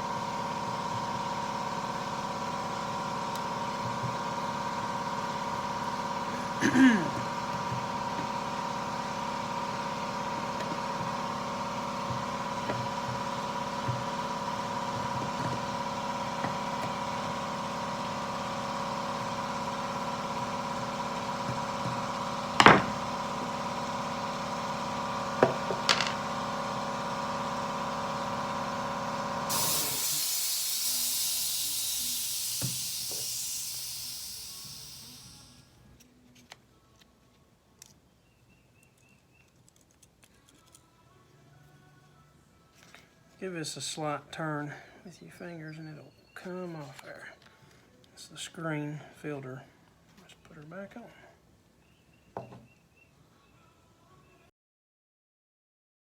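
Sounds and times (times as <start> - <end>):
lawn mower engine running: 0.0 - 35.6
steady hiss: 29.5 - 35.5.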